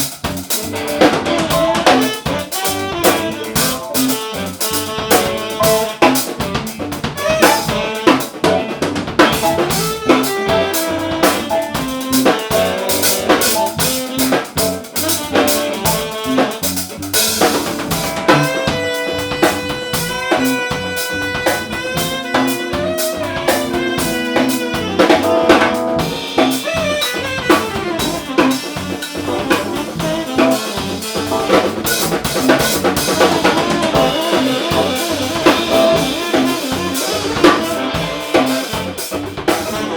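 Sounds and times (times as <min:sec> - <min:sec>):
drum kit beat: 0:00.0 - 0:39.9
instruments playing sustained notes: 0:22.0 - 0:26.9.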